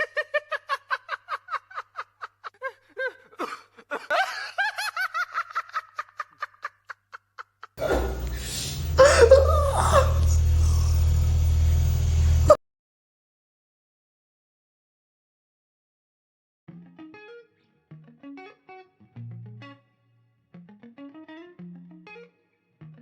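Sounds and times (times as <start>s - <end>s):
person laughing stifled: 0.0s - 11.2s
person speaking: 7.8s - 11.2s
steady low hum: 7.8s - 12.6s.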